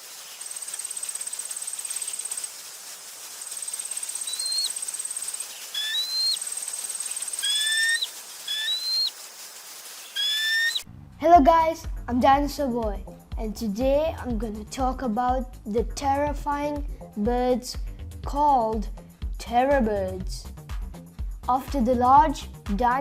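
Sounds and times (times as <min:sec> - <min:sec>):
bird calls: 0:00.0 - 0:10.8
insect trilling: 0:00.0 - 0:10.8
soft hiss: 0:00.0 - 0:11.3.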